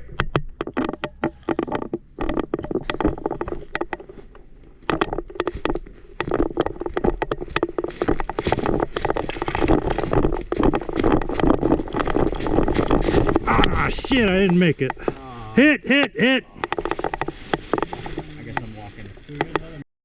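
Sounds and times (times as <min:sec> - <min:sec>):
clothing and gear rustling: 0:02.3 - 0:15.1, 0:16.6 - 0:19.8
quick footfalls: 0:05.2 - 0:15.1.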